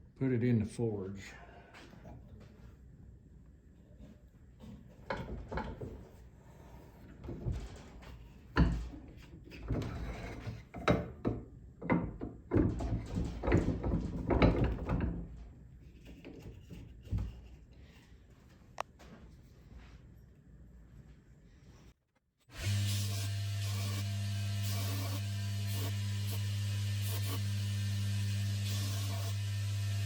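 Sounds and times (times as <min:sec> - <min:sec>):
objects knocking and clunking: 0:04.0 - 0:06.2, 0:07.1 - 0:18.1.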